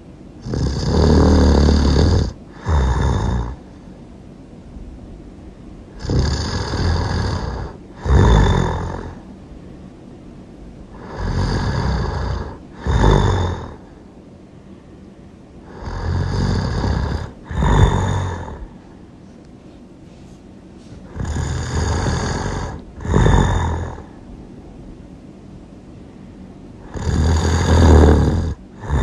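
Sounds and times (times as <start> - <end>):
loud snoring: 0.4 - 3.7, 6.0 - 9.2, 10.9 - 14.0, 15.6 - 18.7, 21.0 - 24.2, 26.8 - 29.0.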